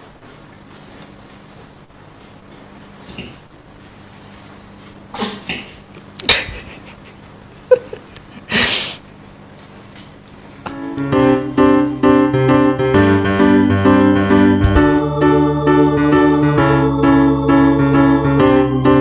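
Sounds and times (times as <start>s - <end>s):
cat sneezing: 5.1s - 6.7s, 7.8s - 9.0s
electric piano music: 10.7s - 19.0s.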